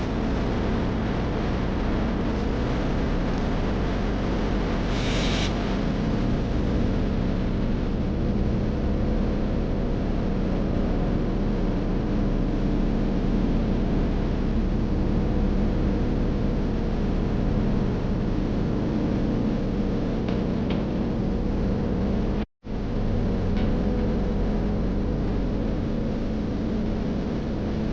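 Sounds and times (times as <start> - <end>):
tyre and wind hiss: 4.7 - 5.8.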